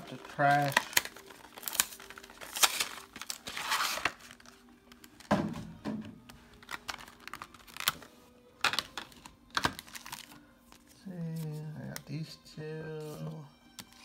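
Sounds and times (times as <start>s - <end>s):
foil wrappers crinkling: 0.0s - 5.3s, 6.4s - 12.0s.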